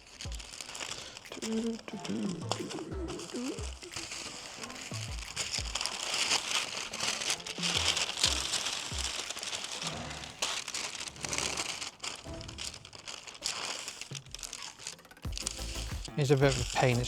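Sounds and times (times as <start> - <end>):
paper crinkling and rustling: 0.0 - 17.0
soft low thumps: 2.8 - 4.2, 5.0 - 6.0.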